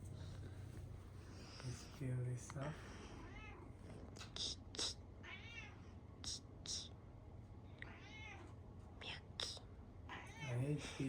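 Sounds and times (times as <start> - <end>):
kitten meowing: 7.8 - 8.4.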